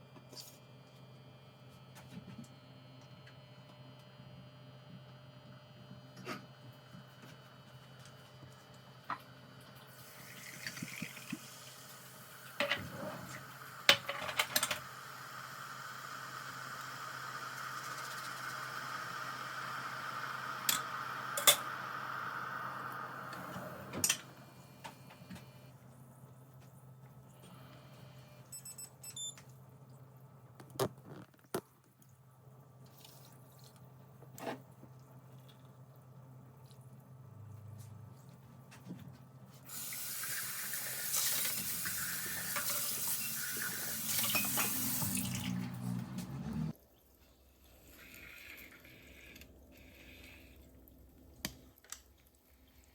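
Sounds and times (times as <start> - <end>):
water pouring: 9.9 - 12.6, 39.7 - 45.9.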